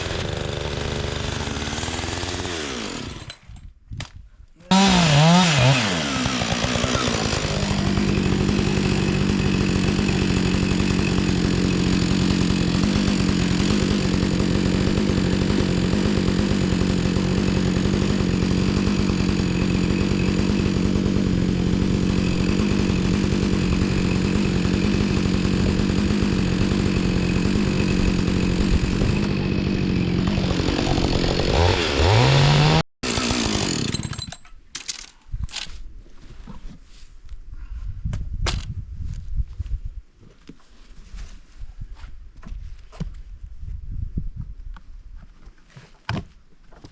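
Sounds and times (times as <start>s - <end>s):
chainsaw cutting log: 0.0s - 3.6s, 4.7s - 34.4s.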